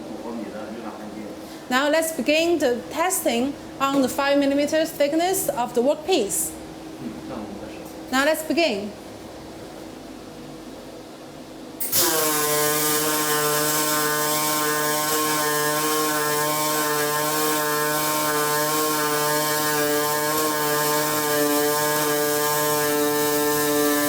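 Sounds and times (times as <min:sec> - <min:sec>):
welding arc humming and hissing: 0:11.7 - 0:24.0.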